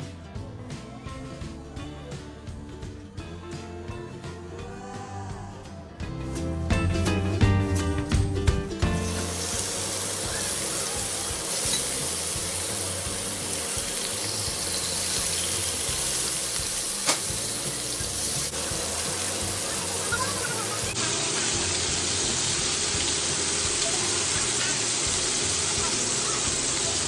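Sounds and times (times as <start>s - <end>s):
food sizzling in oil: 8.8s - 27.0s.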